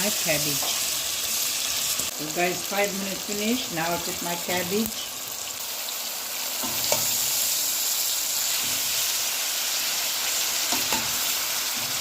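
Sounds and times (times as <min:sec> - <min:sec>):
vegetables sizzling in hot oil: 0:00.0 - 0:12.0.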